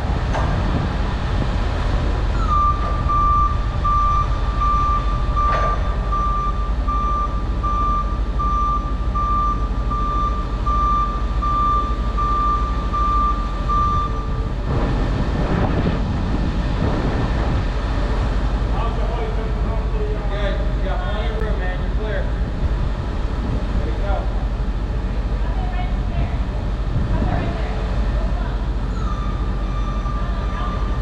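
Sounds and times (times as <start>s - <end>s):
engine low rumble: 0.0s - 31.0s
vehicle backup alarm beeping: 2.3s - 14.6s.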